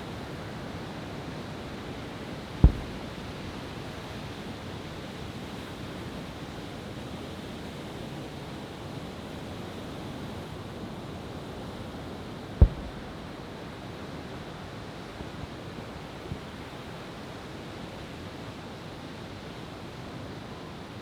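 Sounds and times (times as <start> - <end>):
firework boom: 2.6 - 3.3, 12.6 - 13.4.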